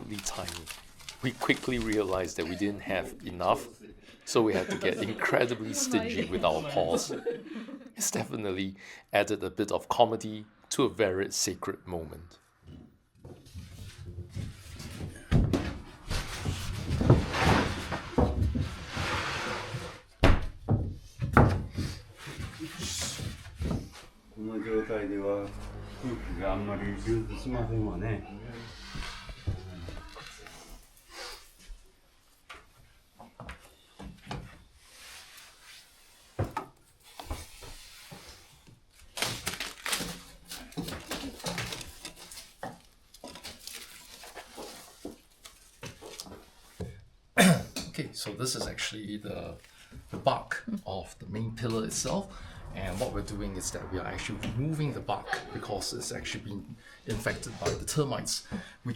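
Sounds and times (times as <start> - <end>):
scraping and rustling: 15.8 - 20.1.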